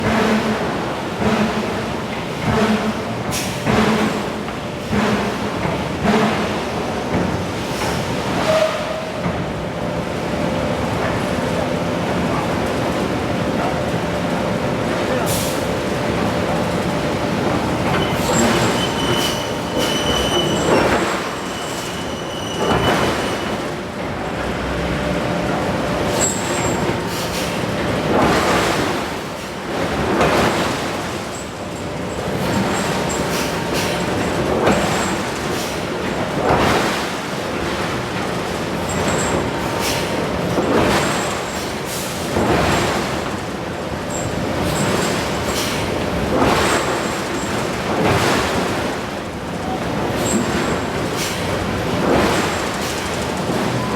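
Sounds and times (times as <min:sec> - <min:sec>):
loud shop din: 0:15.1 - 0:23.7.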